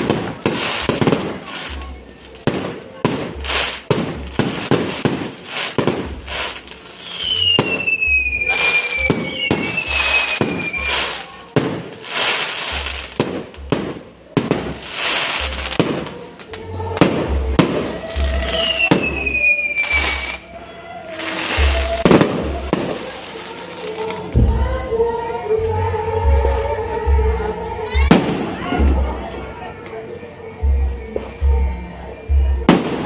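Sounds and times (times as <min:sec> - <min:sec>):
fireworks bangs and pops: 0:00.0 - 0:20.4, 0:21.2 - 0:24.6, 0:32.7 - 0:33.0
falling firework whistles: 0:03.5 - 0:11.4, 0:18.2 - 0:20.4.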